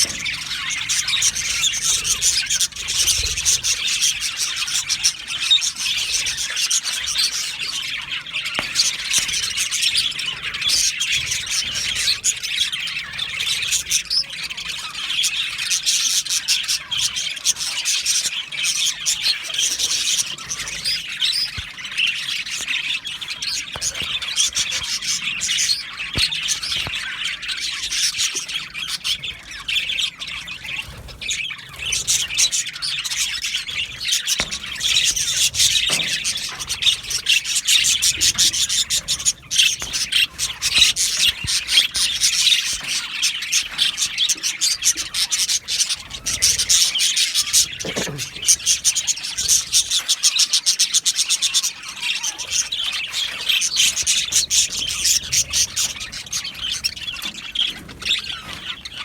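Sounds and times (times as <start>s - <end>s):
budgerigars chattering: 0.0s - 59.0s.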